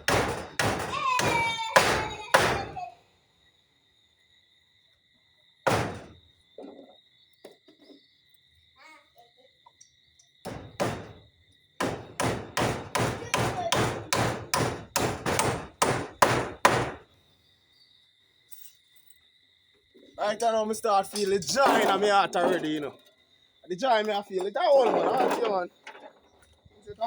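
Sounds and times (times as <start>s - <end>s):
hammer striking nails: 0.0s - 2.8s, 5.7s - 6.1s, 10.4s - 11.2s, 11.8s - 17.0s
crickets chirping: 0.0s - 27.0s.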